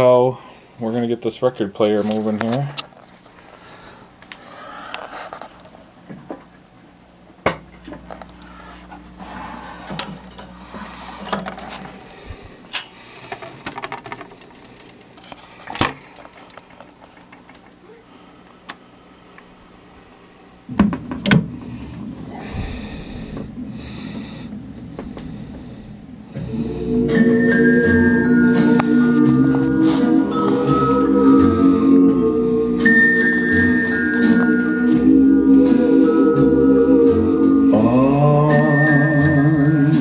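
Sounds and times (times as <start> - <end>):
low hum: 7.4 - 12.5, 20.7 - 40.0
thump and low rumble: 20.7 - 26.6.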